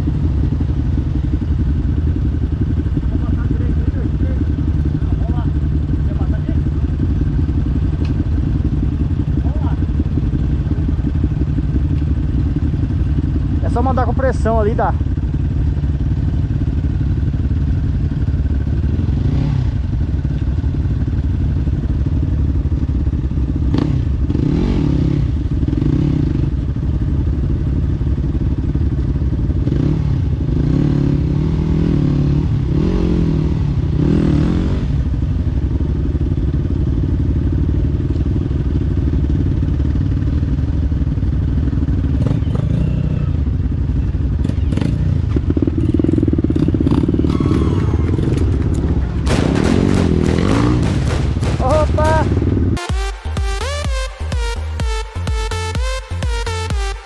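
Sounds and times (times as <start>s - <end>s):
dirt bike engine revving: 23.6s - 26.5s, 29.6s - 35.0s, 44.4s - 53.0s
knocks and clatters: 47.3s - 52.8s.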